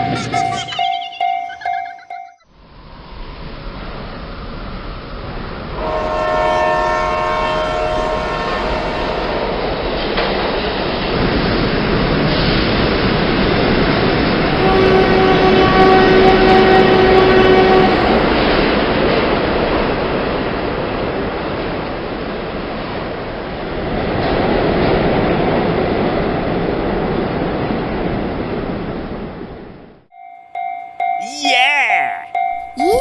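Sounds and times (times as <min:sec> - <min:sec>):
train rumbling and rattling: 0:03.0 - 0:29.8
train horn: 0:05.8 - 0:09.9, 0:14.5 - 0:18.8.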